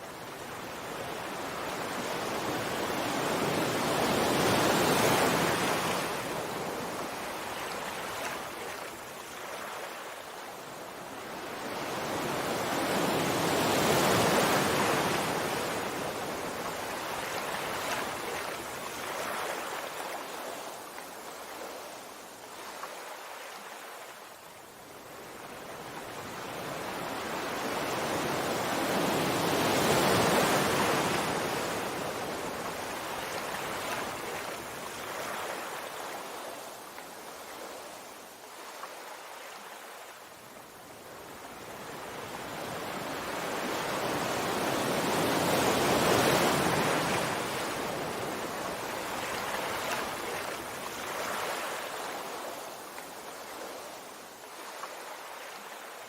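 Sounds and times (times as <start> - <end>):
sea waves washing in: 25.4 - 56.0.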